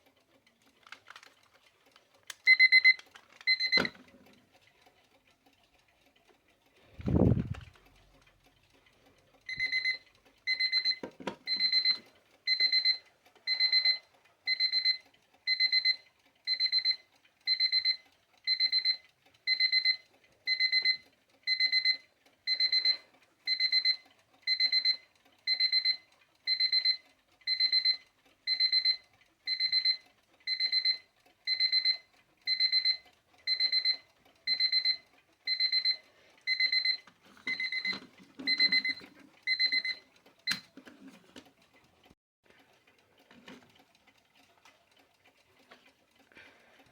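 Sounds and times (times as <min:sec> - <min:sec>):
alarm clock beeping: 0:02.4 - 0:04.1, 0:09.5 - 0:40.8.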